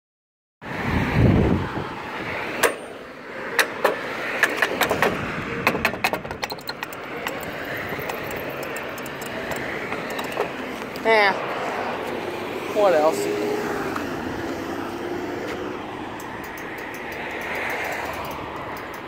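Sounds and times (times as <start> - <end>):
street traffic rumble: 0.6 - 19.0
sharp irregular clicks: 5.8 - 10.7.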